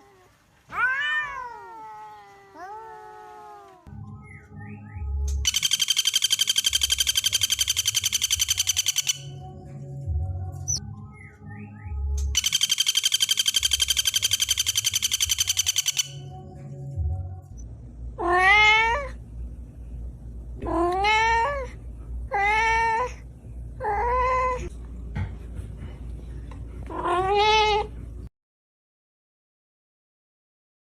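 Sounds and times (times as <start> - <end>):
cat meowing: 0.0 - 3.9, 18.2 - 19.2, 20.6 - 21.7, 22.3 - 23.2
rapid high-pitched trill: 5.5 - 9.3, 12.4 - 16.2.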